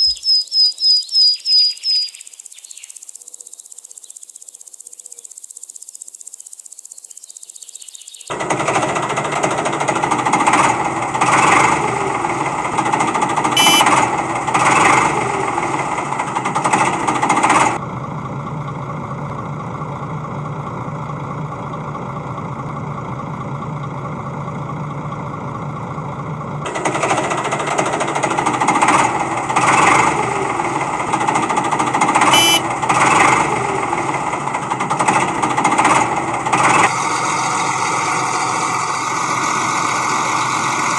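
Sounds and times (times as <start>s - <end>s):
machine rattling: 5.3s - 17.8s, 26.7s - 37.8s.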